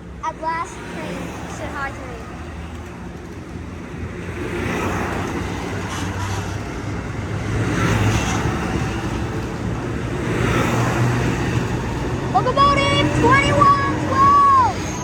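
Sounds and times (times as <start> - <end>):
train wheels on rails: 0.7 - 15.0
diesel engine drone: 6.8 - 15.0.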